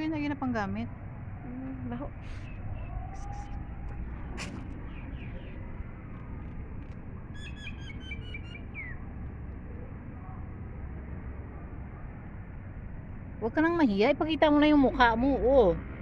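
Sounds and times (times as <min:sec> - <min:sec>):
steady low rumble: 0:00.0 - 0:16.0
bird chirping: 0:02.2 - 0:06.6, 0:07.2 - 0:09.1.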